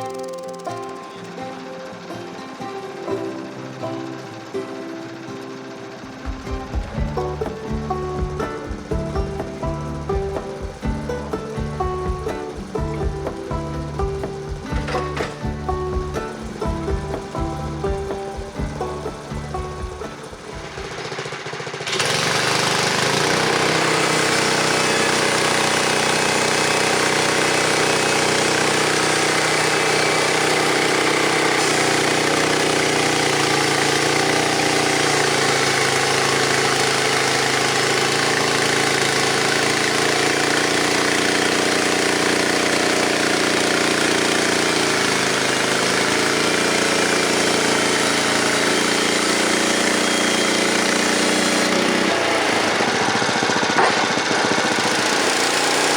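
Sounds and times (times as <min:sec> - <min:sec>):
sawmill engine running: 0:00.0 - 0:55.9.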